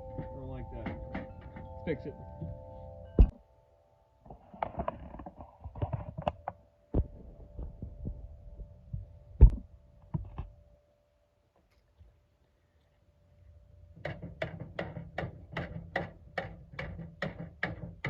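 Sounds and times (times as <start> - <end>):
metal toolbox knocks and clanks: 0.1 - 1.8.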